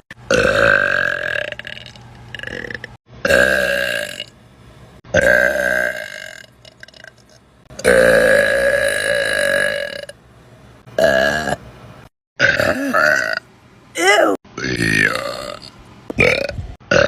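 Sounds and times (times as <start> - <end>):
person belching: 0.1 - 4.3, 5.1 - 7.1, 7.7 - 10.1, 11.0 - 11.6, 12.4 - 13.4, 14.6 - 17.0.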